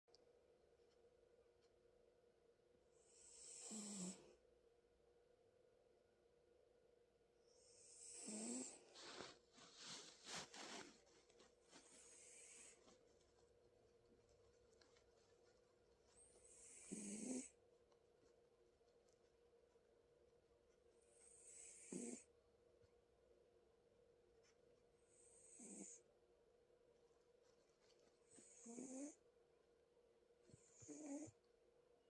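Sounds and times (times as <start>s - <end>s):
faint steady hum: 0.1s - 32.0s
pet snoring softly: 3.0s - 4.4s, 7.5s - 9.2s, 11.9s - 12.8s, 16.2s - 17.6s, 21.0s - 22.3s, 25.0s - 26.1s, 28.2s - 29.2s, 30.4s - 31.4s.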